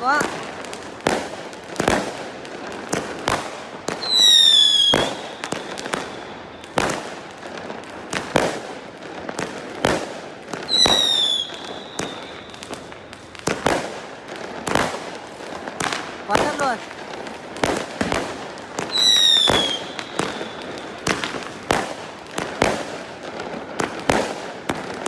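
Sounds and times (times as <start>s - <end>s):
fireworks banging: 0.0s - 25.0s
whistling firework: 2.9s - 15.2s, 17.6s - 25.0s.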